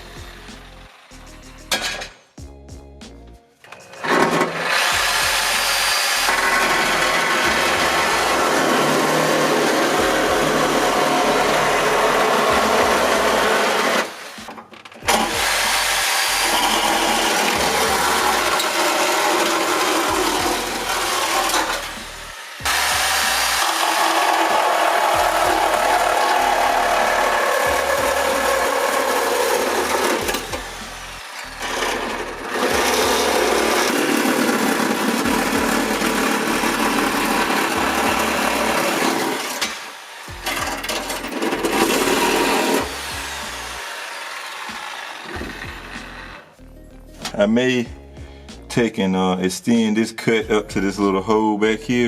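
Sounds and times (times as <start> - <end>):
power tool cutting sheet metal: 0.0 - 2.2, 3.7 - 46.6.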